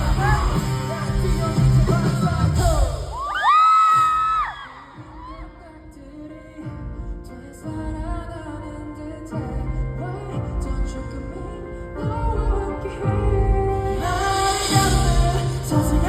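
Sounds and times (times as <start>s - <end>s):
live rock band playing: 0.0s - 3.3s, 9.4s - 16.0s
person singing: 0.0s - 16.0s.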